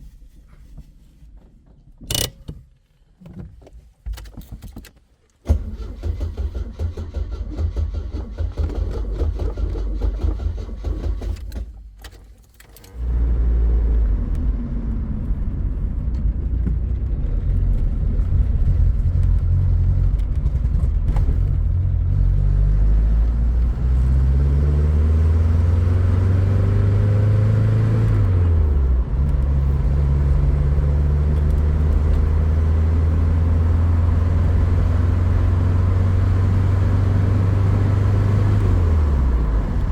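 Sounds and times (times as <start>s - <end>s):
car engine running: 23.3s - 39.9s.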